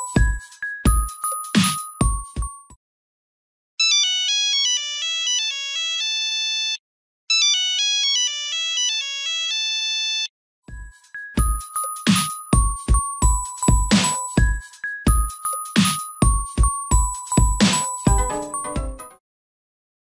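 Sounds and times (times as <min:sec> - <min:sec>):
mobile phone ringtone beeps: 0:00.0 - 0:02.6, 0:03.8 - 0:19.2
drum-backed tune: 0:00.0 - 0:02.7, 0:10.7 - 0:19.2
percussive tune with low thumps: 0:00.2 - 0:02.6, 0:11.4 - 0:19.1.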